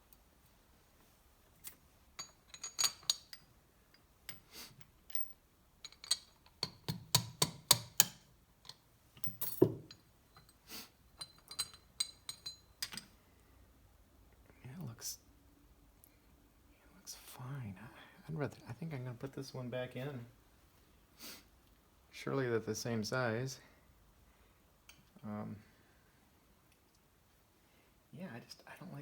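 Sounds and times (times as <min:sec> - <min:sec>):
metal parts clinking: 0:01.6 - 0:03.5, 0:04.3 - 0:10.6, 0:11.2 - 0:13.1.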